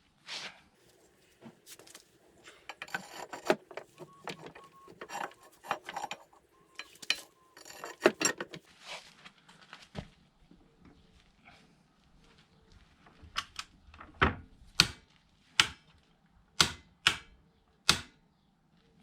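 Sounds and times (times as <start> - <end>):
metal tools clicking and rattling: 0.9 - 8.6.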